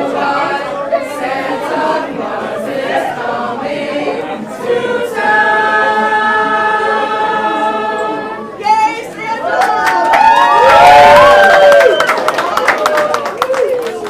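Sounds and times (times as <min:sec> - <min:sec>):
group of people singing: 0:00.0 - 0:09.6.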